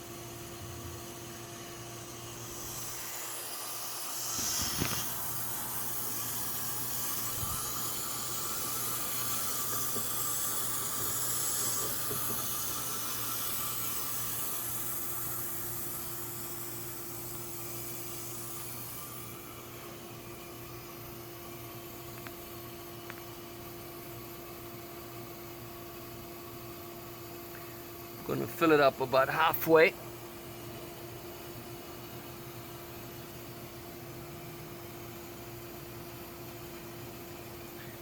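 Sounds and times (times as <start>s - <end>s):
water hissing into tank: 1.4s - 20.4s.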